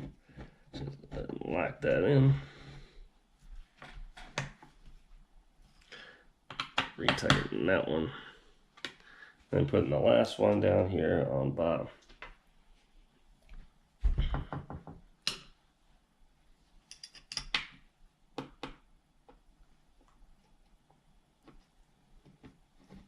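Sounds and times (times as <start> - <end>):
clicks and knocks of handling parts: 16.8 - 17.8.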